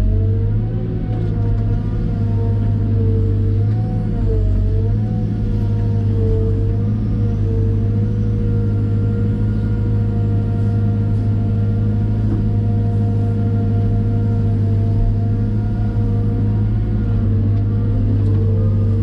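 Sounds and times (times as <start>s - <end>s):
diesel engine droning: 0.0s - 19.0s.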